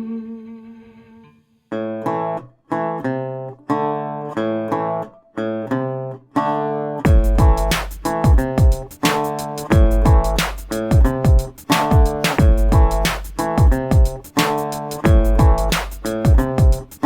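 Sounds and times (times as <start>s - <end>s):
guitar strumming chords: 1.7s - 17.0s
drums: 7.1s - 17.0s.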